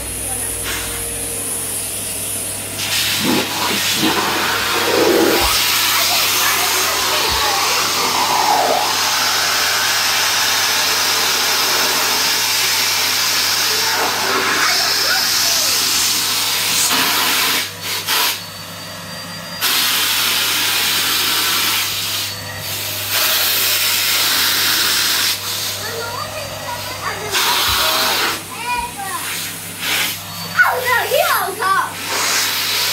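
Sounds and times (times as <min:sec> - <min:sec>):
vacuum cleaner rushing hiss: 0:00.0 - 0:18.6, 0:19.6 - 0:32.9.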